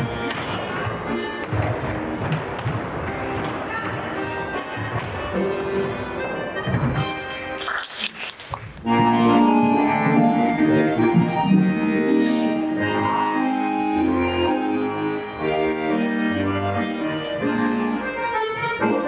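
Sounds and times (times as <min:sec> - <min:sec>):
folk dance tune in chords: 0:00.0 - 0:07.6, 0:08.8 - 0:19.0.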